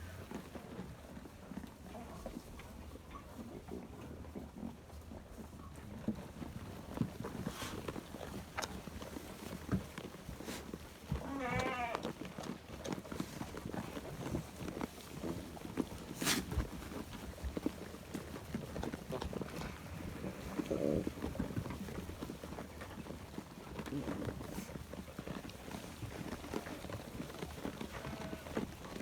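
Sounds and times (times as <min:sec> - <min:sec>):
sheep bleating: 0:11.2 - 0:12.1, 0:27.9 - 0:28.6.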